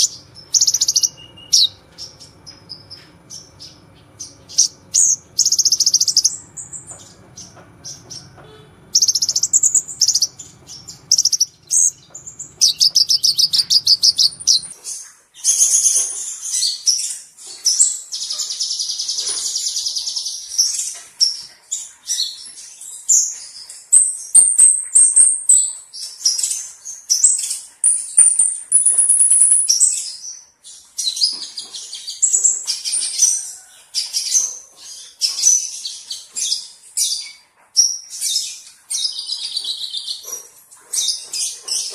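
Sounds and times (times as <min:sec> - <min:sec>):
sunbird chattering trills: 0:00.0 - 0:14.8.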